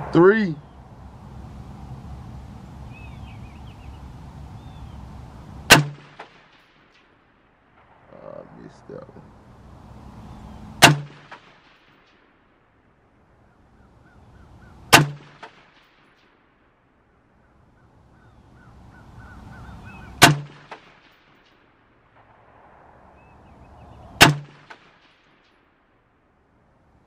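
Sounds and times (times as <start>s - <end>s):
rifle shots: 5.7s - 7.1s, 10.8s - 12.6s, 14.9s - 16.4s, 20.2s - 25.8s.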